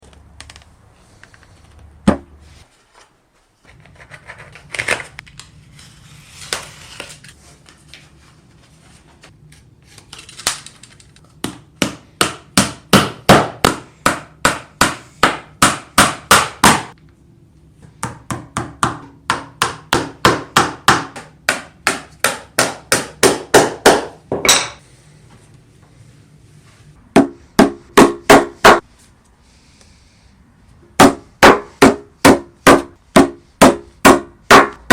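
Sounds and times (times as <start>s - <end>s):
knocks and handling sounds: 0.0s - 12.6s
hammer striking wood: 11.4s - 17.0s, 18.0s - 24.8s, 27.1s - 28.8s, 31.0s - 34.9s.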